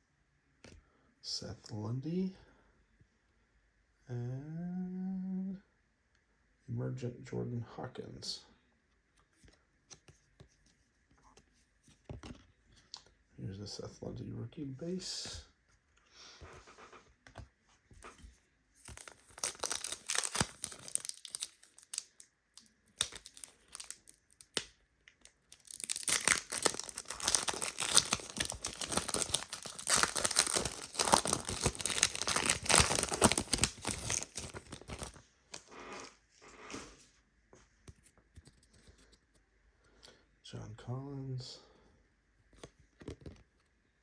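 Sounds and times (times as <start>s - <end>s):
wrapper tearing and crinkling: 18.8s - 35.7s.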